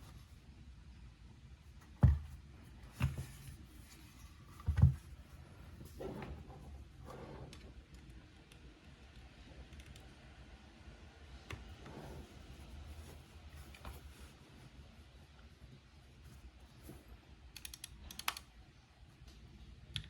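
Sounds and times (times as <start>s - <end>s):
mechanical keyboard keystrokes: 17.5s - 18.5s.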